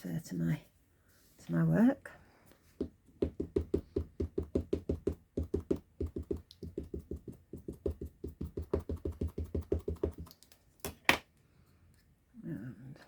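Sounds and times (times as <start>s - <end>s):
ink pad tapping rubber stamp: 2.8s - 10.3s.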